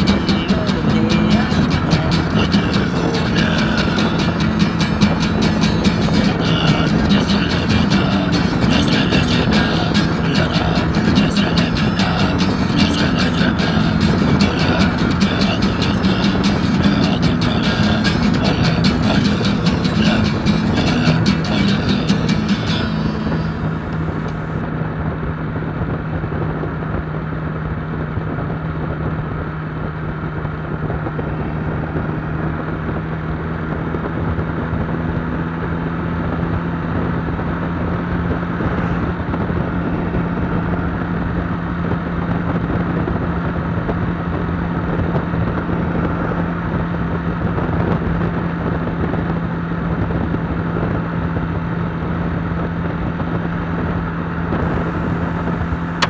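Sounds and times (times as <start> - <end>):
motorcycle engine running: 0.0 - 24.6, 54.6 - 56.0
road and wind noise: 0.0 - 50.4, 54.1 - 56.0.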